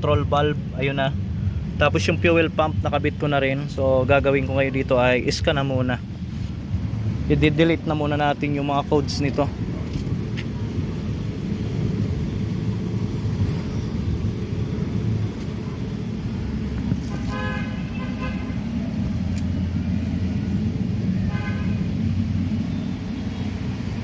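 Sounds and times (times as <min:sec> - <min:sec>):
vehicle engine rumbling: 0:00.0 - 0:24.0
horn toots: 0:16.8 - 0:18.8, 0:21.2 - 0:22.0.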